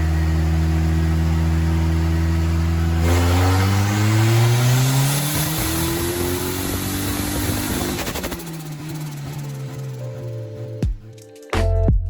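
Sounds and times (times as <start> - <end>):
engine revving up: 0.0 - 10.8.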